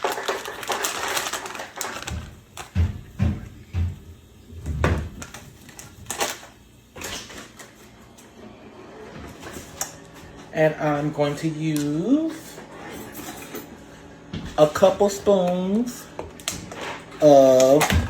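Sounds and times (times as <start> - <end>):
wrapper crinkling: 0.0 - 2.7, 5.1 - 7.8.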